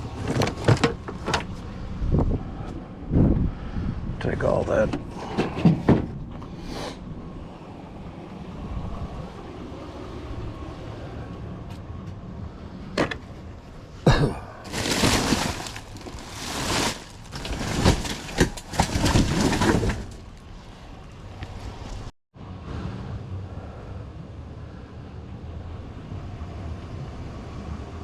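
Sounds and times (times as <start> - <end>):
objects rustling and clattering: 0.0 - 1.6, 14.1 - 22.1.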